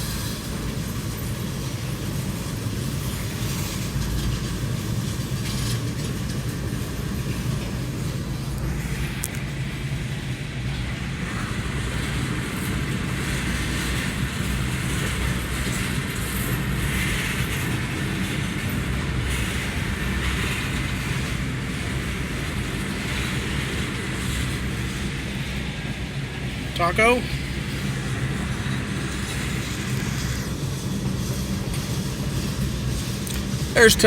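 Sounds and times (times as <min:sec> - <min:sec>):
rail joints clicking: 0:00.0 - 0:26.7
train wheels rumbling on rail: 0:00.0 - 0:34.0.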